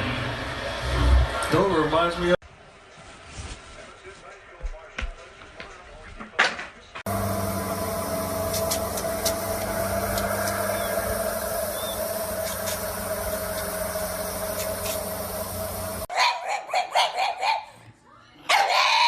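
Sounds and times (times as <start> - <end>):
steady mechanical hum: 0.0 - 3.2, 7.0 - 16.1.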